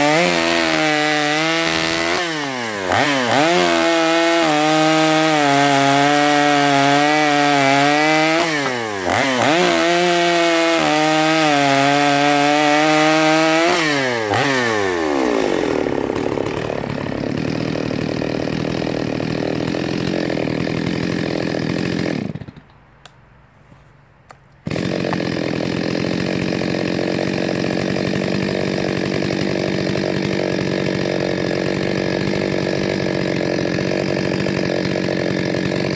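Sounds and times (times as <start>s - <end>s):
chainsaw engine running: 0.0s - 22.8s, 24.6s - 35.9s.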